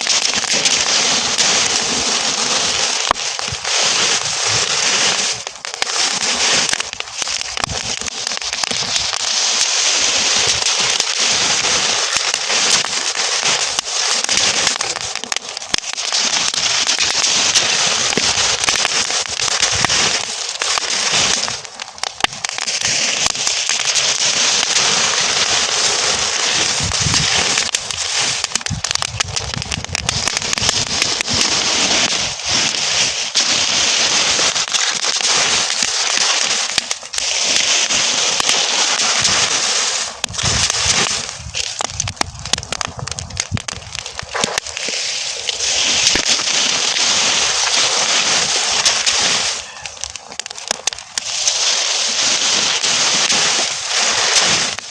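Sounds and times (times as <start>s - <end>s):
burning straw crackling: 0.0s - 54.9s.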